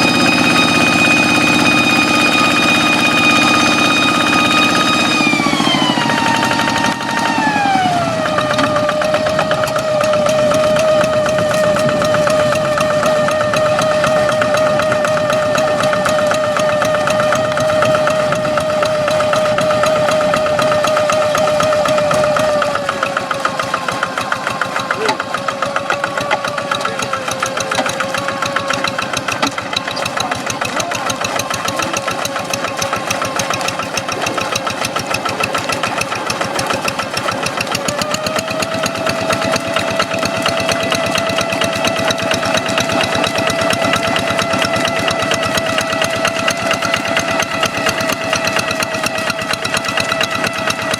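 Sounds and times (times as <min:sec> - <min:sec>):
diesel tractor engine whining: 0:00.0 - 0:50.9.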